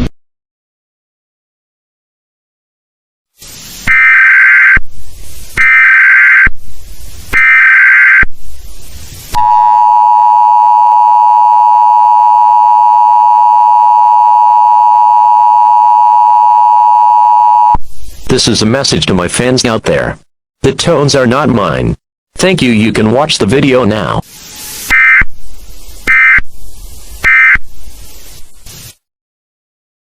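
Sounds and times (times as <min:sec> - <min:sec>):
warbling data tone bursts: 0:03.9 - 0:04.8, 0:05.6 - 0:06.5, 0:07.3 - 0:08.3, 0:26.1 - 0:26.4, 0:27.2 - 0:27.6.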